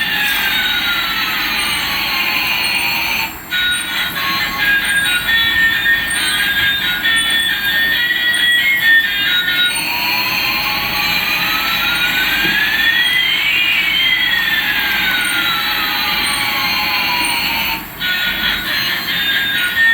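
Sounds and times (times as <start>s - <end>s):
whistling tones rising and falling: 0.0s - 19.9s.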